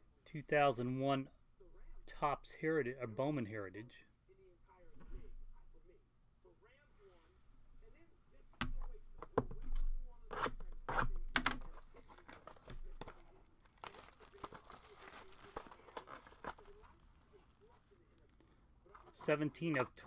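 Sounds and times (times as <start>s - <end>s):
wrapper tearing and crinkling: 11.6s - 17.7s.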